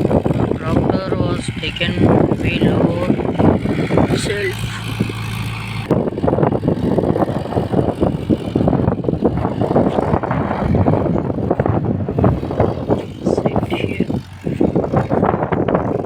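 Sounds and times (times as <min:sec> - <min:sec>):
diesel tractor clattering: 0:00.0 - 0:16.0.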